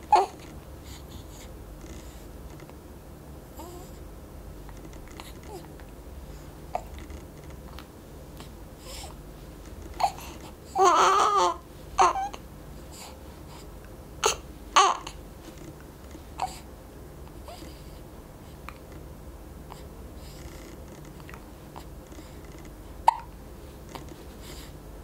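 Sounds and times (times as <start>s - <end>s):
baby fussy crying: 10.0s - 12.4s, 14.2s - 15.2s
baby hiccuping: 23.0s - 23.3s.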